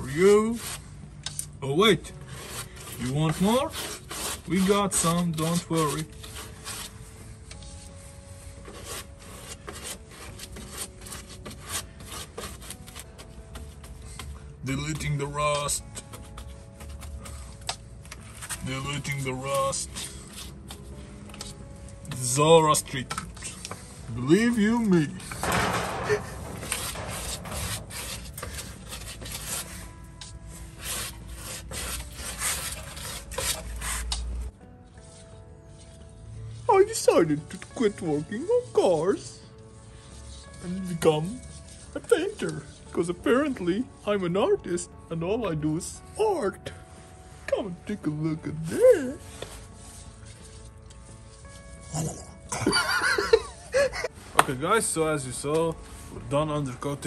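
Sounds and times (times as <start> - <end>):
scratchy rubbing strokes: 0.0 - 0.9, 2.2 - 22.4, 23.4 - 34.4, 37.8 - 43.6, 48.7 - 52.0
faint background music: 0.0 - 57.0.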